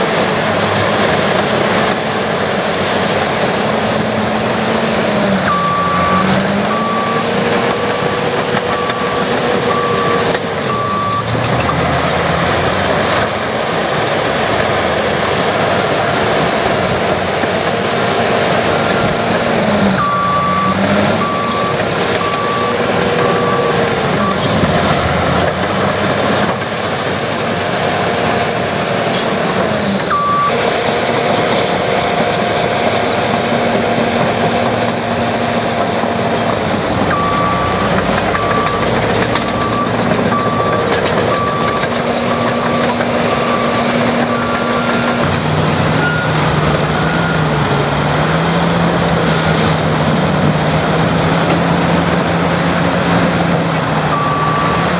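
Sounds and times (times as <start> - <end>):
diesel engine running under load: 0.0 - 54.9
reversing alarm beeping: 5.1 - 14.1, 15.3 - 26.6, 29.8 - 31.8, 36.1 - 49.8, 54.1 - 54.9.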